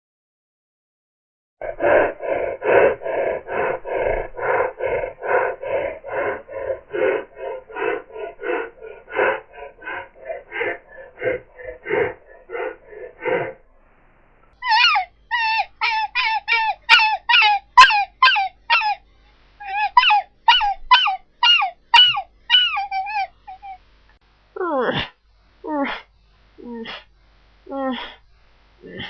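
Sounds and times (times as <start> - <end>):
person huffing like a wolf: 1.6 - 13.6
person yelping like a wolf: 14.6 - 19.0, 19.6 - 23.8.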